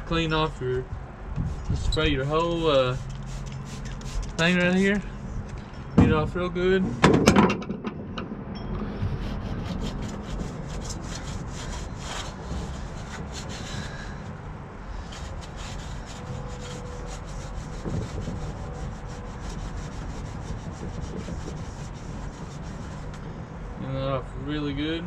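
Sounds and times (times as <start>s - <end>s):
cloth rubbing on metal: 1.4s - 5.1s, 8.9s - 14.3s, 15.0s - 23.2s.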